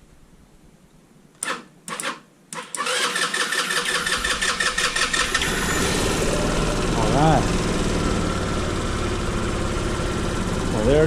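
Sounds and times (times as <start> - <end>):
electric starter bursts: 1.4 - 7.3
scooter engine running: 3.8 - 11.0.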